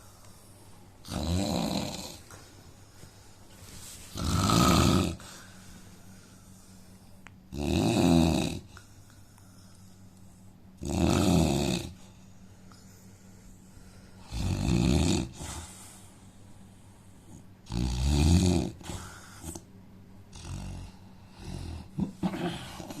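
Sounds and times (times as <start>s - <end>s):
quiet breathing: 0.0s - 1.0s, 1.8s - 7.5s, 8.6s - 10.8s, 11.9s - 14.5s, 15.2s - 17.6s, 18.8s - 19.7s
man snoring: 1.0s - 2.2s, 4.1s - 5.2s, 7.5s - 8.8s, 10.8s - 12.0s, 14.3s - 15.5s, 17.6s - 19.0s, 20.3s - 23.0s.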